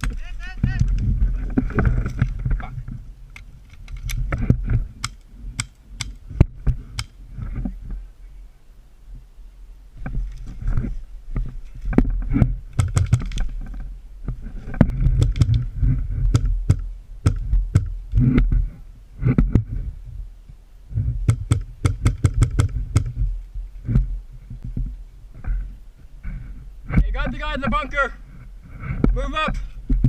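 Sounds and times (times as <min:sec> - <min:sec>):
heavy low rumble: 0:00.0 - 0:21.8.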